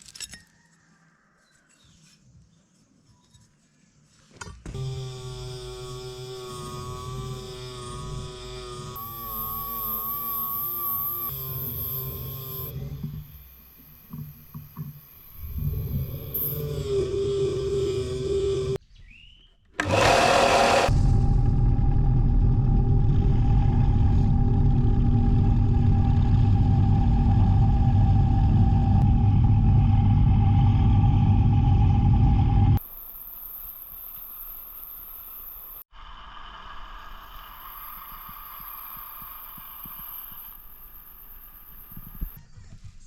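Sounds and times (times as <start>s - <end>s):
small electric motor whining: 4.7s - 18.8s, 19.8s - 20.9s, 32.6s - 42.4s.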